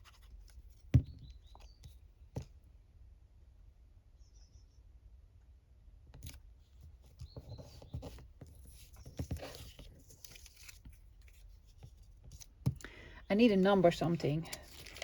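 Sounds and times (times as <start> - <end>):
paper rustling: 7.3 - 12.8, 13.6 - 15.0.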